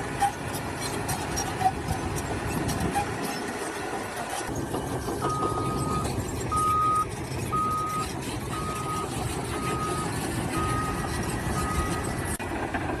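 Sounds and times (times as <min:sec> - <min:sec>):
heavy vehicle engine rumble: 0:00.0 - 0:13.0
reversing alarm beeping: 0:05.2 - 0:12.3.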